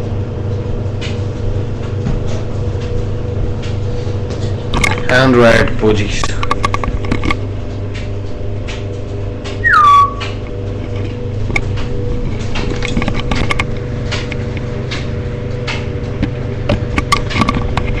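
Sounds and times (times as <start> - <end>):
steady low hum: 0.0 - 18.0
budgerigars chirping: 9.6 - 10.2.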